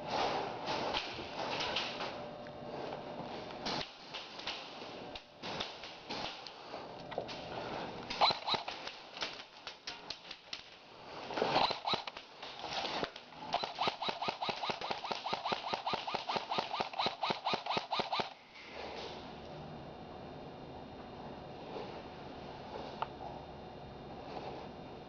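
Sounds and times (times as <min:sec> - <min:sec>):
airsoft gun firing: 0:08.1 - 0:10.8, 0:11.6 - 0:12.3, 0:13.5 - 0:18.4
scattered clicks: 0:08.1 - 0:10.8, 0:11.6 - 0:18.4.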